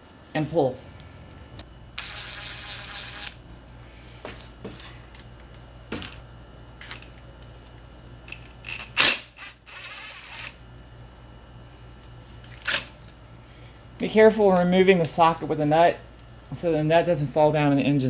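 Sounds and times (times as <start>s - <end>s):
rasping ratchet bursts: 2.0s - 3.4s.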